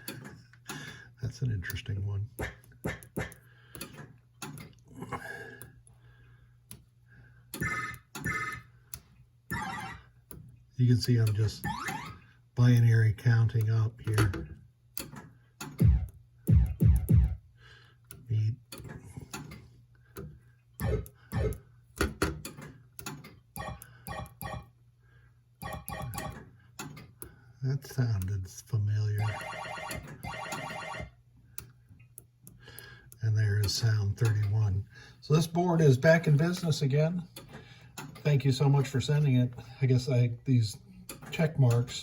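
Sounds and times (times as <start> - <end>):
synthesized pinball tones and chirps: 7.6 - 8.7, 9.5 - 10.1, 11.6 - 12.3, 15.8 - 17.4, 20.8 - 21.7, 23.6 - 24.7, 25.6 - 26.5, 29.2 - 31.2
switch clicks: 13.6 - 17.4, 18.0 - 24.5.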